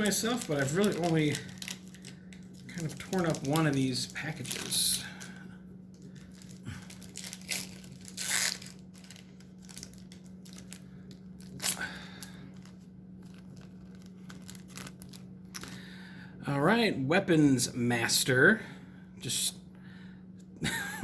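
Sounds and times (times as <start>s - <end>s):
wrapper tearing and crinkling: 0.0s - 15.8s.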